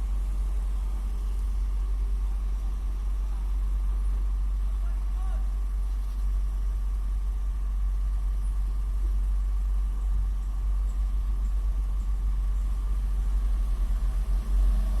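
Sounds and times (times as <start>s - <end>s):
heavy diesel engine rumbling: 0.0s - 15.0s.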